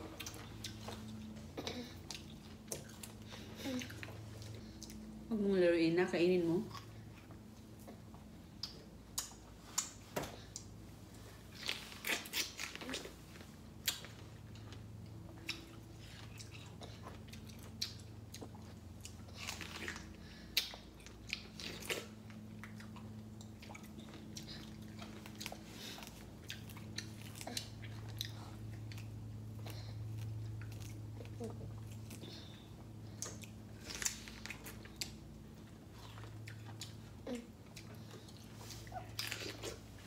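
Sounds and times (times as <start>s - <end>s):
baby chewing fruit: 0.0s - 5.3s, 6.6s - 40.0s.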